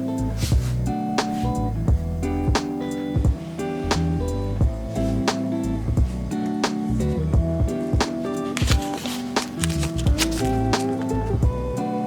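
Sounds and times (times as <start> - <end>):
guitar plucking and strumming: 0.0 - 12.0
low bass line: 0.2 - 2.6, 3.2 - 7.8, 9.6 - 11.8.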